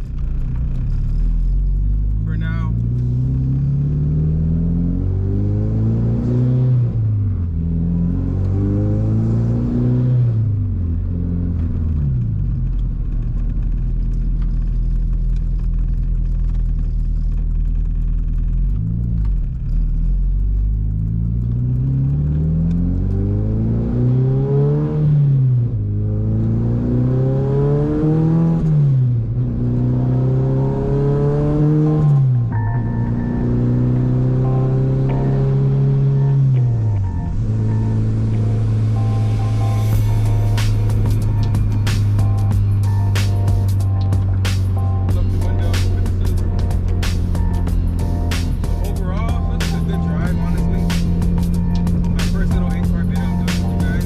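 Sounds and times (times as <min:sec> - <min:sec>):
car engine accelerating: 0:00.0 - 0:54.0.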